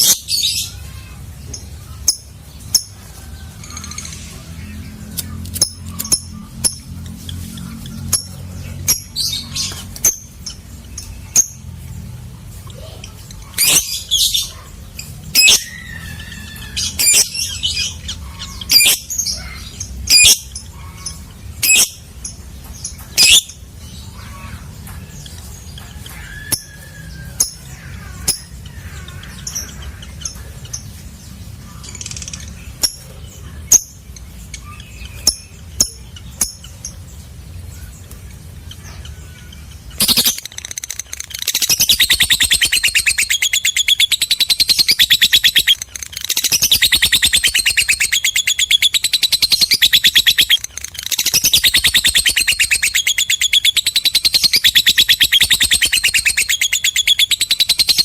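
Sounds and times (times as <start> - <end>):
lovebird chirps: 38.7 - 58.0
lovebird fast chattering trill: 39.7 - 58.0.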